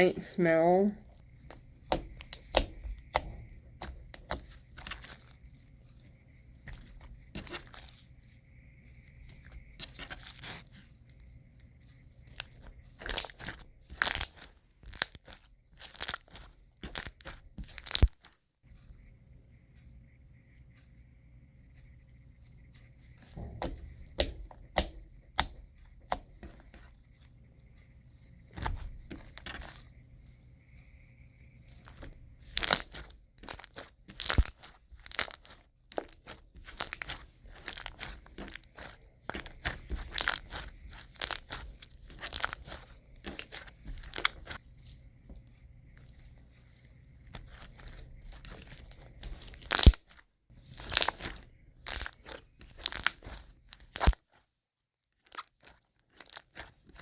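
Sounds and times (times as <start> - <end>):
slime squished by hand: 1.1 - 6.0, 12.3 - 18.4, 28.5 - 29.8, 31.6 - 44.6, 47.2 - 54.4, 55.2 - 57.0.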